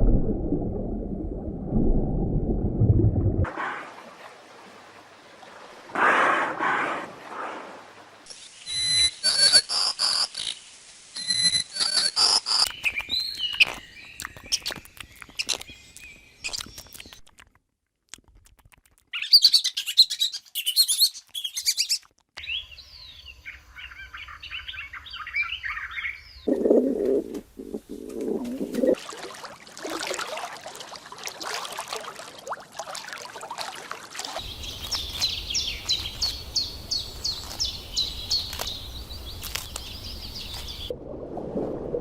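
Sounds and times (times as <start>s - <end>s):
bird calls and chirps: 11.8s - 17.2s, 19.1s - 27.1s, 34.4s - 40.9s.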